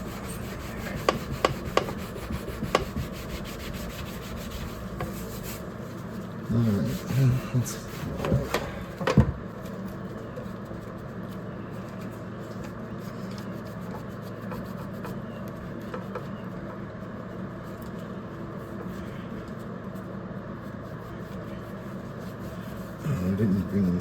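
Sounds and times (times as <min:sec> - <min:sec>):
rag scrubbing on plastic: 0:00.0 - 0:08.6.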